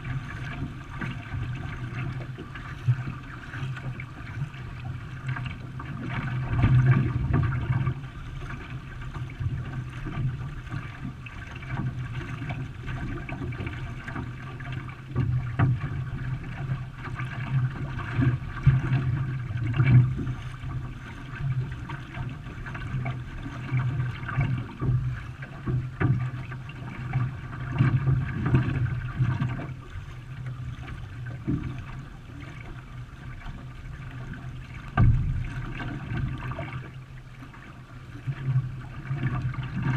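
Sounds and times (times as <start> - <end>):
water rushing and splashing: 0.0 - 39.9
steady low rumble: 17.4 - 39.9.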